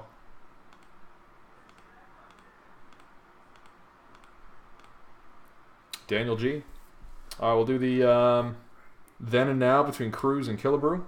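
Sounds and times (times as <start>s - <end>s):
computer mouse clicking: 0.7s - 1.0s, 1.6s - 5.0s.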